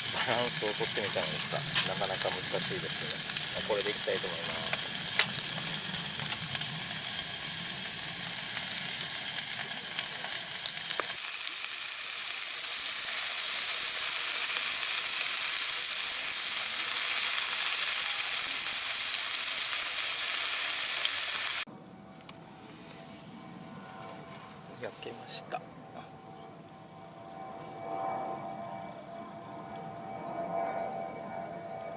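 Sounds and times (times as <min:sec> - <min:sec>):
meat sizzling in a pan: 0:00.0 - 0:21.7.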